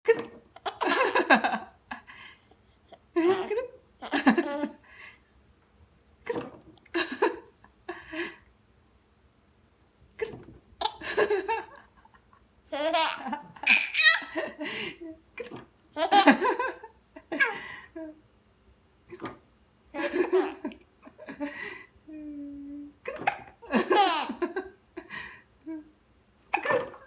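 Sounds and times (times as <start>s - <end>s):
baby giggling: 0.6s - 1.3s, 3.2s - 4.8s, 10.2s - 11.4s, 12.7s - 14.4s, 15.4s - 16.6s, 20.0s - 20.7s, 23.0s - 24.5s, 26.5s - 27.0s
baby hiccups: 26.5s - 27.0s.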